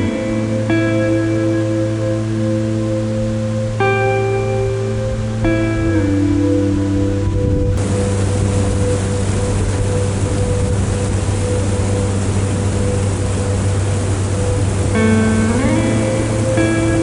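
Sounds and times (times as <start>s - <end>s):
soft background music: 0.0s - 17.0s
waterfall rushing: 7.8s - 17.0s.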